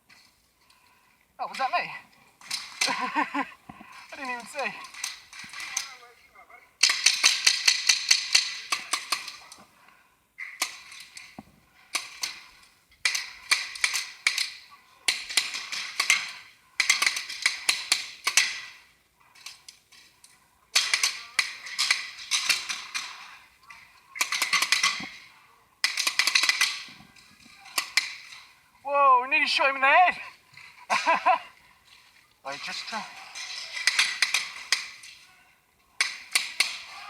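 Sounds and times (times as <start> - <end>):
paintball markers firing: 6.8 - 9.7, 10.4 - 28.6, 32.7 - 35.3, 35.9 - 37.0.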